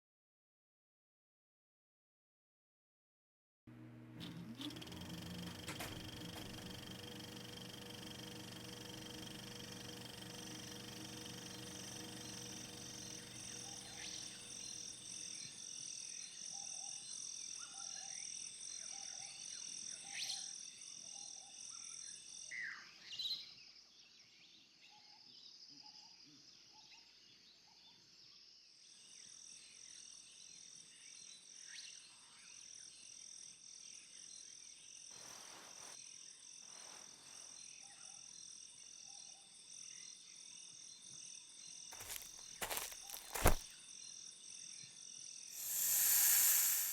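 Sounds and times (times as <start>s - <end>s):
insect chorus pulsing: 5.0s - 15.6s, 42.0s - 43.6s, 45.5s - 46.9s.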